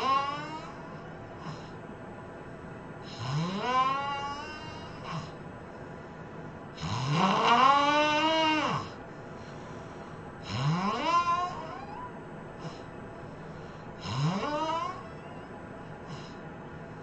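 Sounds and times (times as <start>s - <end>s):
person snoring loudly: 0.0s - 0.8s, 3.0s - 5.4s, 6.8s - 9.0s, 10.4s - 11.9s, 14.0s - 15.4s.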